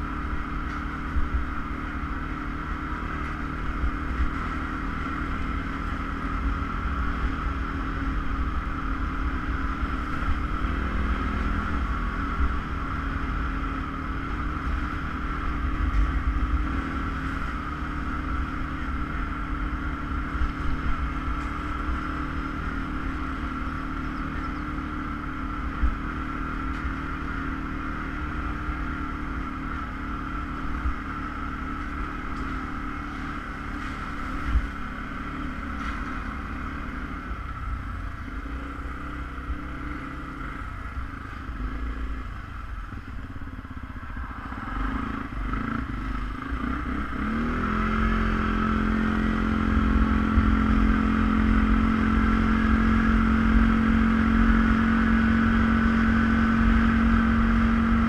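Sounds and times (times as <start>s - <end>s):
atv engine running: 0.0s - 58.0s.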